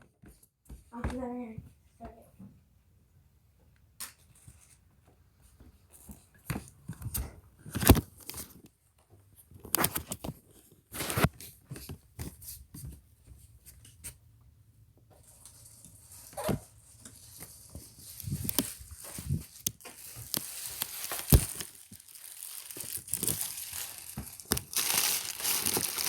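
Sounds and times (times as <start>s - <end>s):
packaging rustling and crinkling: 15.2s - 26.0s.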